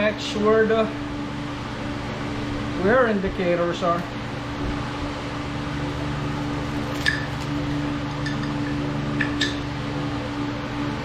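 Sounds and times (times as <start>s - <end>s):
steady background hum: 0.0s - 11.0s.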